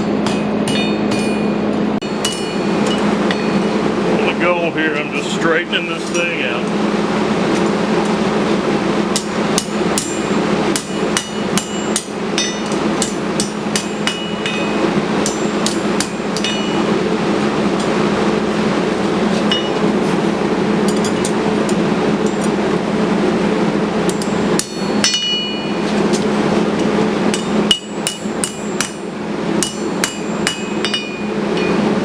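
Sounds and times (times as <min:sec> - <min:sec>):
hammer ringing on steel: 0:00.0 - 0:03.7, 0:09.1 - 0:16.9, 0:24.6 - 0:25.8, 0:27.3 - 0:29.0, 0:29.6 - 0:31.8
steady drone: 0:00.0 - 0:32.0.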